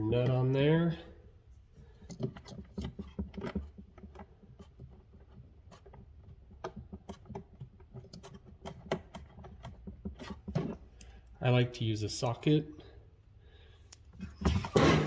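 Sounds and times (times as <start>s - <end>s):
light clicks of screw and nut: 1.9s - 11.4s, 13.8s - 14.2s.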